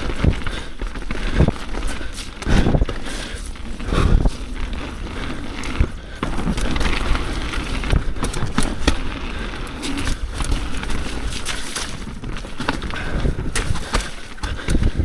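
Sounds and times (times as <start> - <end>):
bike frame and chain rattling: 0.0 - 15.0
bike tyres rolling over rocks: 0.0 - 15.0.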